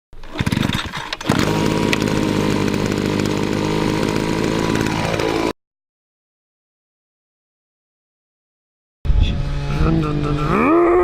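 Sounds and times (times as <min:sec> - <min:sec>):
power tool motor running: 0:00.2 - 0:05.6.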